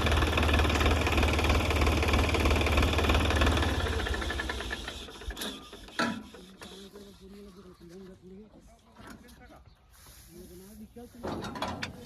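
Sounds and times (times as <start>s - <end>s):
diesel engine driving a thresher: 0.0s - 5.9s.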